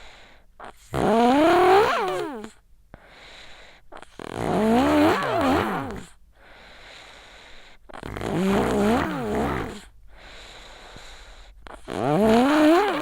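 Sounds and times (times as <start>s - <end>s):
child snoring: 0.6s - 2.6s, 3.9s - 6.2s, 7.8s - 13.0s
airy breathing: 8.6s - 11.9s.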